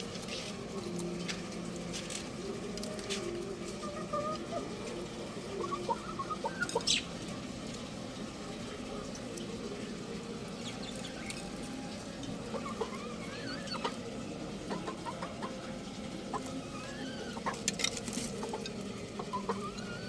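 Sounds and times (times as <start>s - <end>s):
steady background hum: 0.0s - 20.0s
young rooster peeping: 5.5s - 7.1s, 12.3s - 14.0s, 16.3s - 17.6s.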